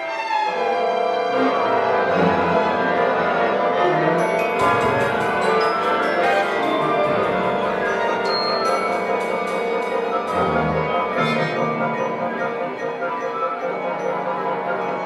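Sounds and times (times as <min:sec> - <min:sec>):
orchestra playing held chords: 0:00.5 - 0:15.0
high ringing struck notes: 0:04.4 - 0:12.1.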